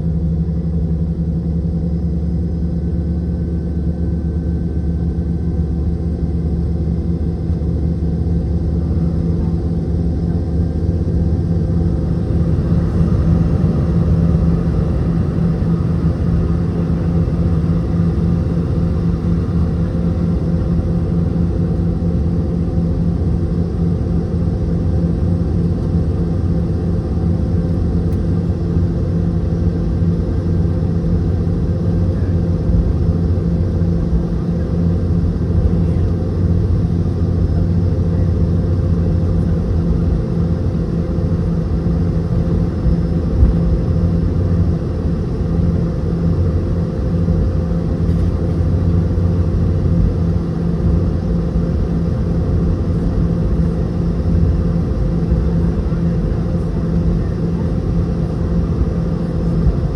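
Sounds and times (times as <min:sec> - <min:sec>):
jet engines humming: 0:07.4 - 0:24.2, 0:35.9 - 0:59.9.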